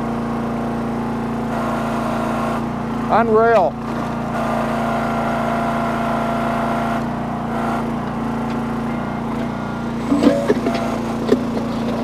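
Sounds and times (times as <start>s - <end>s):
small engine running: 0.0s - 12.0s
sharp metal clanks: 10.0s - 11.7s.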